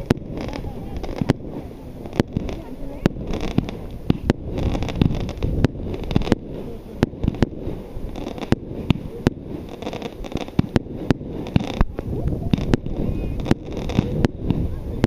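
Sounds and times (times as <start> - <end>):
firework bangs: 0.0 - 15.0
wind buffeting microphone: 0.0 - 15.0.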